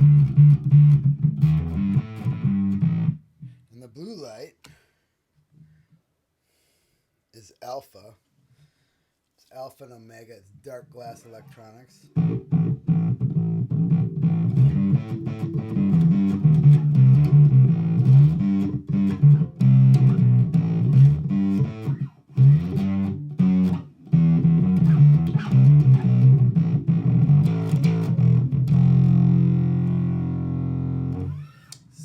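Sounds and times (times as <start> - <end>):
electric bass riff: 0.0 - 3.6, 12.1 - 32.0.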